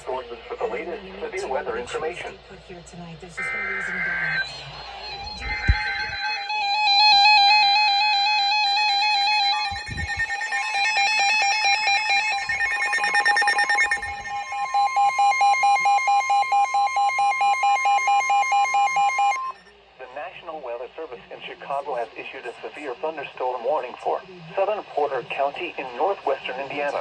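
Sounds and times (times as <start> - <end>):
long steady alarm tone: 0.6 - 19.8
fast beeping: 3.2 - 19.7
electronic warbling and chirping tones: 3.4 - 19.7.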